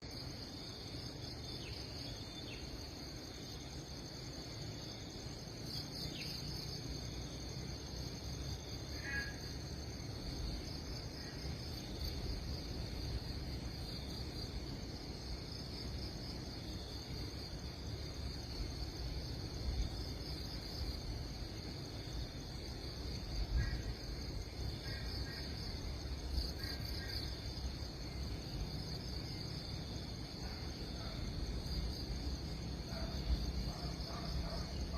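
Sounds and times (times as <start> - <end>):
insects trilling: 0.0 - 34.9
low rumbling background noise: 0.0 - 34.9.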